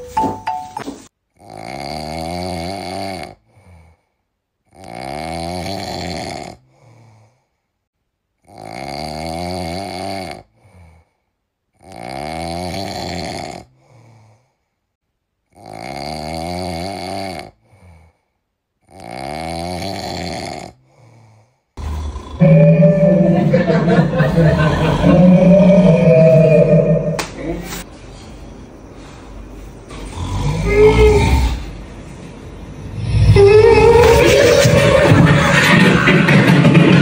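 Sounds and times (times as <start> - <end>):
loud snoring: 1.3 - 4.0, 4.7 - 7.2, 8.4 - 11.1, 11.8 - 14.3, 15.5 - 18.2, 18.8 - 27.2, 30.0 - 31.8.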